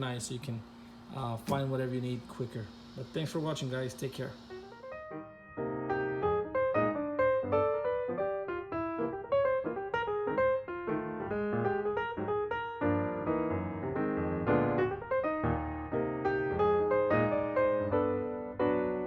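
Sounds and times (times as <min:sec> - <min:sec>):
piano music: 0:04.5 - 0:19.0.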